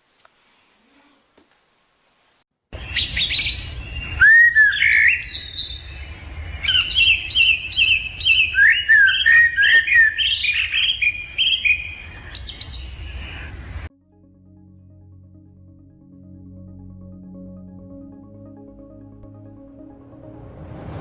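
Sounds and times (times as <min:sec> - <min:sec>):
bird singing: 0:02.8 - 0:13.9.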